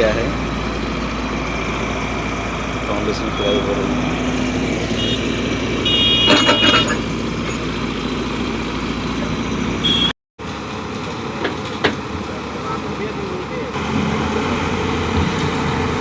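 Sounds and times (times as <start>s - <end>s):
excavator engine running: 0.0s - 16.0s
metallic clanking and squealing: 6.2s - 7.8s.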